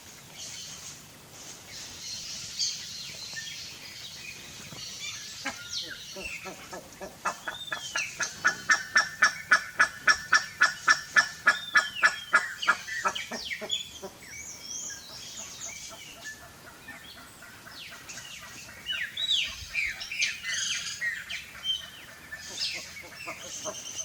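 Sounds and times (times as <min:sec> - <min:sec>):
birds calling loudly: 0:01.7 - 0:24.0.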